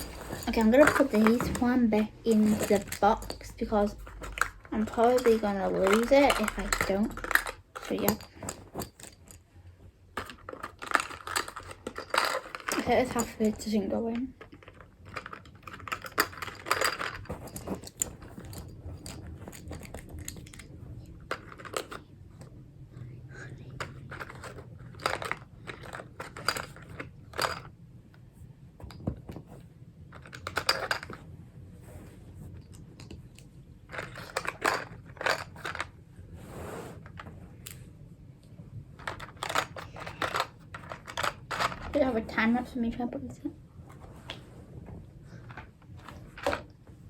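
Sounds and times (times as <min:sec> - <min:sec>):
plastic toys clicking and knocking: 0:00.0 - 0:22.6, 0:23.4 - 0:27.8, 0:28.8 - 0:31.3, 0:32.6 - 0:36.0, 0:39.0 - 0:43.4, 0:45.3 - 0:46.8
soft rubbing: 0:31.6 - 0:32.6.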